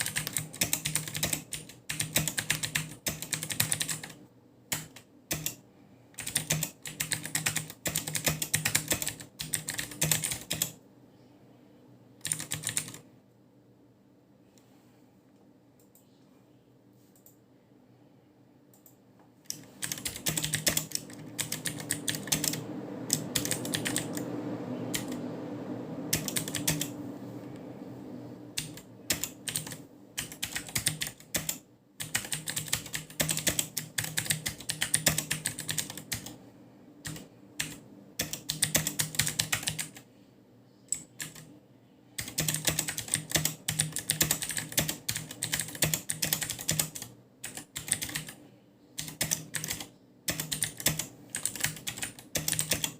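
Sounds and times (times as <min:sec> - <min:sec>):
mechanical keyboard typing: 0:00.0 - 0:05.6, 0:06.2 - 0:10.8, 0:12.2 - 0:13.1, 0:19.5 - 0:24.3, 0:24.9 - 0:25.2, 0:26.1 - 0:27.0, 0:28.6 - 0:36.4, 0:37.0 - 0:40.0, 0:40.9 - 0:41.5, 0:42.2 - 0:48.4, 0:49.0 - 0:52.9.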